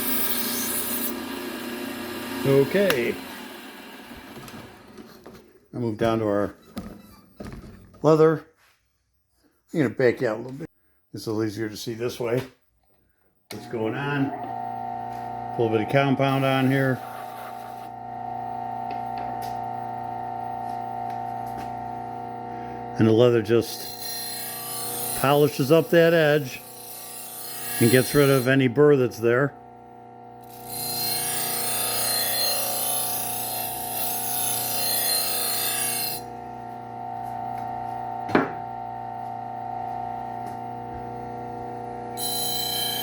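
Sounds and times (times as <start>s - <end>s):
sharpening machine motor hum: 0.0s - 5.0s, 13.6s - 43.0s.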